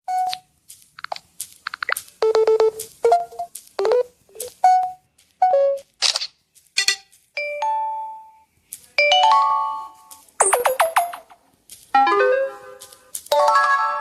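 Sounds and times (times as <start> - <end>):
phone electronic chirps and chimes: 2.2 - 5.8.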